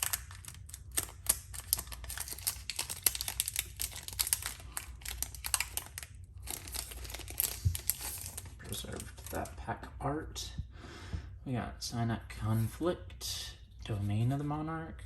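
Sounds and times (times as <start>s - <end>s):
foil wrapper crinkling: 0.0s - 9.5s.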